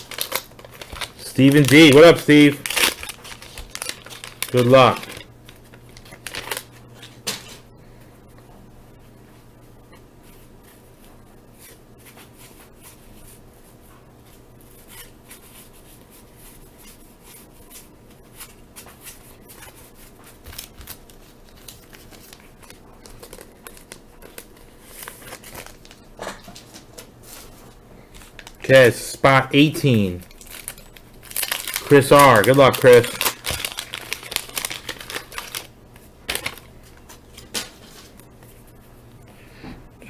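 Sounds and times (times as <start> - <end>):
wax paper rustling: 0.0 - 7.1, 15.3 - 38.6.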